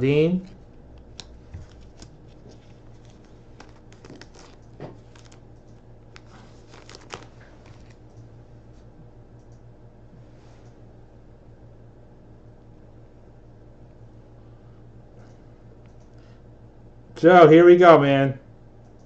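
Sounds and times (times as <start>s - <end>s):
trading cards crinkling and rustling: 1.0s - 8.1s.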